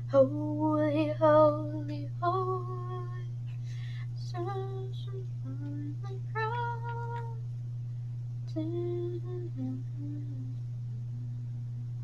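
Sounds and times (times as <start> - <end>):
girl singing: 0.0 - 3.4, 4.2 - 7.4, 8.5 - 10.6
steady low hum: 0.0 - 12.0.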